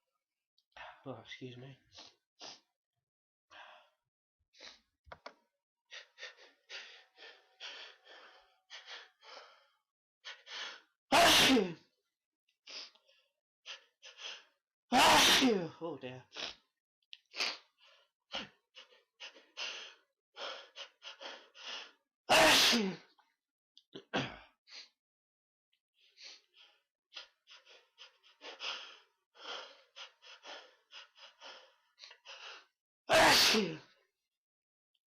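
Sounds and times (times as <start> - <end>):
person sneezing loudly: 11.1 - 11.8, 14.9 - 15.7, 22.3 - 23.1, 33.1 - 33.9.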